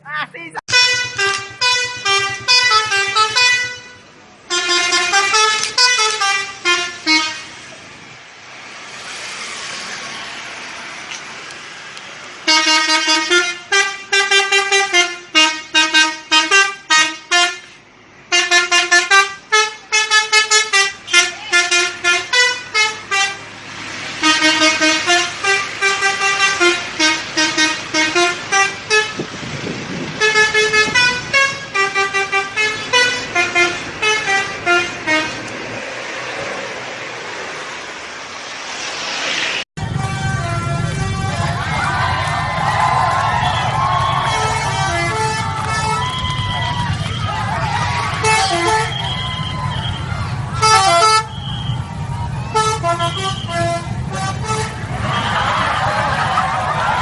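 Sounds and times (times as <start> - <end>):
multi-tone bus horn melody: 0.6 - 7.7, 12.4 - 35.7, 39.8 - 42.3, 43.0 - 57.0
rushing noise: 23.0 - 57.0.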